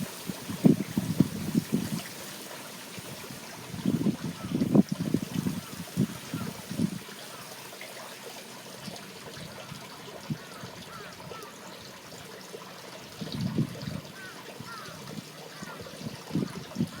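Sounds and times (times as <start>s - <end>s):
water rushing in canal: 0.0s - 17.0s.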